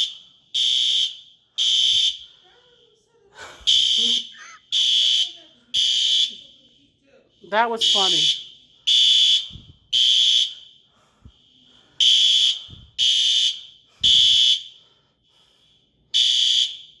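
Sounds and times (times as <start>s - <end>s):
fire alarm horn beeps: 0.0s - 2.2s, 3.7s - 6.4s, 7.7s - 10.7s, 12.0s - 14.8s, 16.1s - 17.0s.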